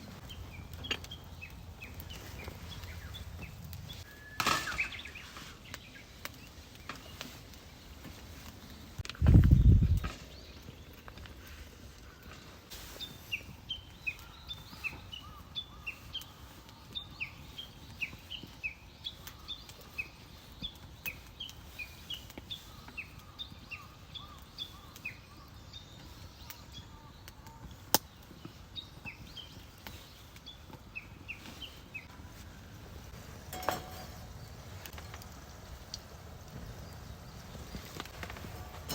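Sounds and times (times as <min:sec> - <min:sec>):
bird chirping: 0:00.0 - 0:07.3.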